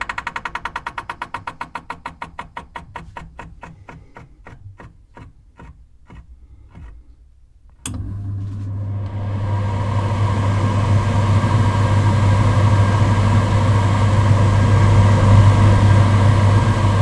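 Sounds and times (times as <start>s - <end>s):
extractor motor low hum: 7.8s - 17.0s
extractor fan whooshing pulse: 7.9s - 17.0s.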